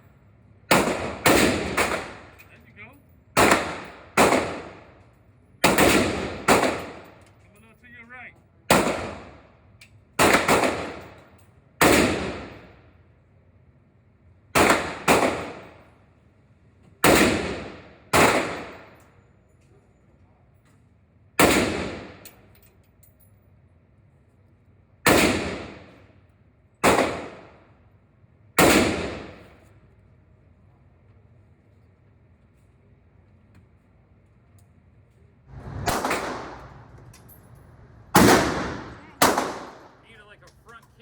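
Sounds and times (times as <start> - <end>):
gunshots with ringing echo: 0.7 - 2.3, 3.4 - 4.9, 5.6 - 7.2, 8.7 - 9.4, 10.2 - 11.1, 14.6 - 15.8, 17.0 - 19.0, 25.1 - 25.9, 26.8 - 27.6, 35.5 - 40.1.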